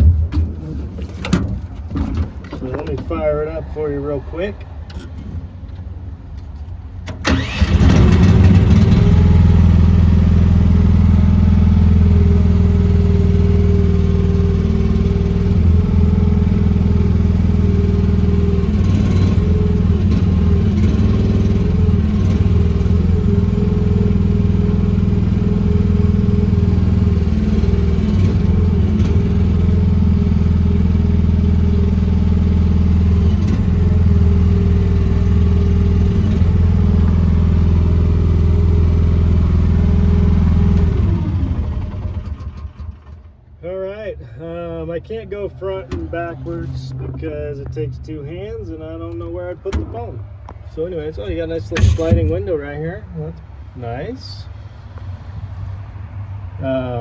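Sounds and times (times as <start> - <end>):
small engine starting and running: 7.2 - 10.1, 16.9 - 43.4.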